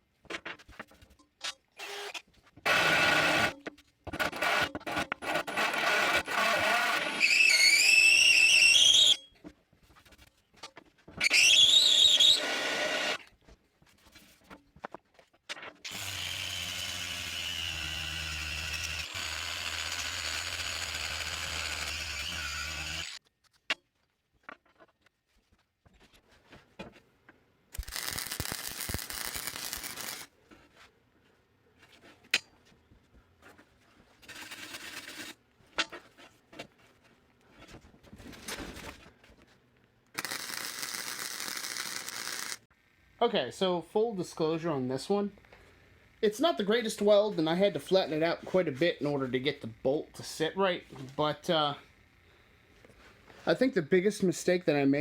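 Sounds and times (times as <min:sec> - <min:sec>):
power tool running: 0:05.4 - 0:07.8, 0:12.2 - 0:13.2, 0:15.9 - 0:23.2
welding bursts on steel: 0:27.8 - 0:30.3, 0:40.2 - 0:42.7.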